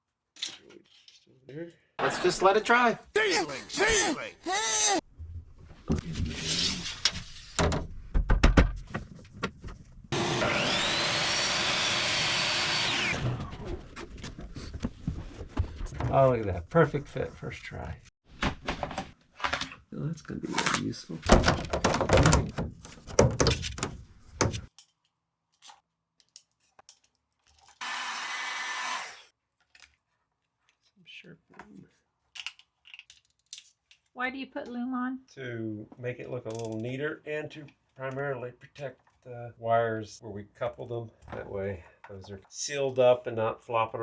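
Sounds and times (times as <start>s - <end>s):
power tool motor whine: 10.2s - 13.7s, 27.8s - 29.3s
knocks and clatter of handling: 20.6s - 27.7s.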